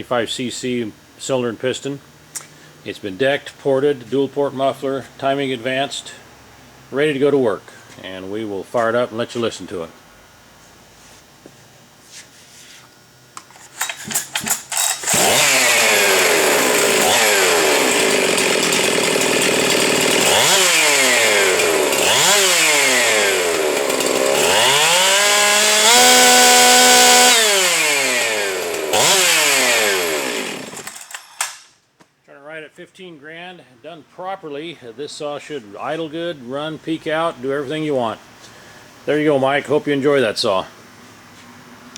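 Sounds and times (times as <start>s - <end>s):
starter cord pulls: 13.4s - 27.8s, 28.6s - 31.7s
chainsaw revving: 13.6s - 31.7s.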